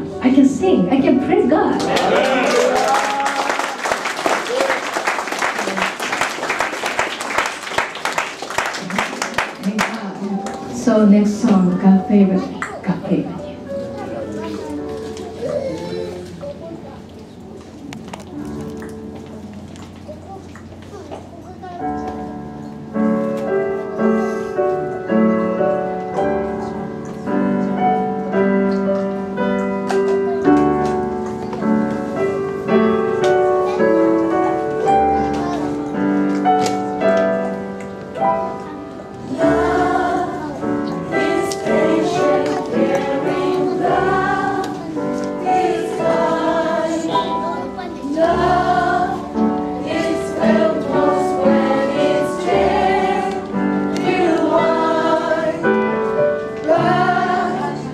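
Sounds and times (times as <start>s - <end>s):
keyboard sustained chords: 9.4s - 20.3s, 21.4s - 57.9s
choir singing: 39.2s - 57.9s.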